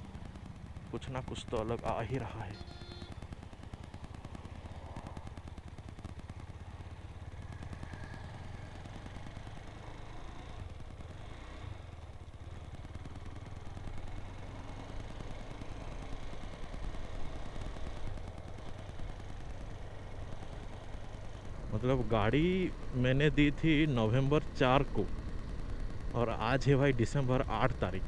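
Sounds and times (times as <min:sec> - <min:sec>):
motorcycle engine running: 0:00.0 - 0:28.0.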